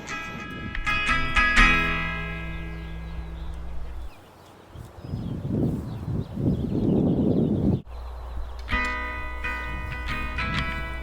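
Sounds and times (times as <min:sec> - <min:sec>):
plucked guitar music: 0:00.0 - 0:04.1, 0:08.7 - 0:11.0.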